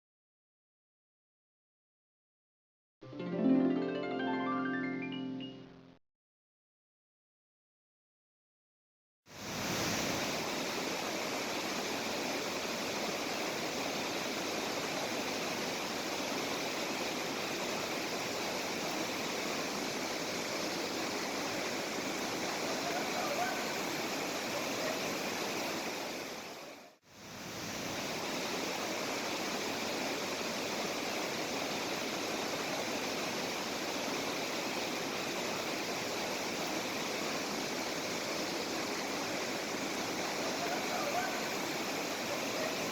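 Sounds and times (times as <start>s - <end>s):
waterfall rushing: 9.4s - 42.9s.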